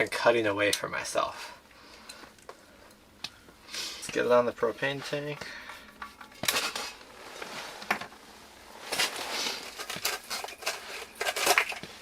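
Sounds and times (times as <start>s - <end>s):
stove handling rustling: 8.8s - 12.0s.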